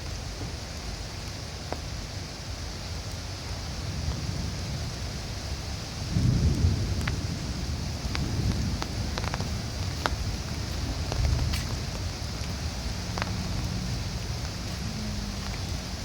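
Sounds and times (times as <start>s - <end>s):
raindrops ticking on surfaces: 0.0s - 16.0s
steady hiss of rain: 0.0s - 16.0s
strong wind: 0.0s - 16.0s
low rumble: 6.6s - 16.0s.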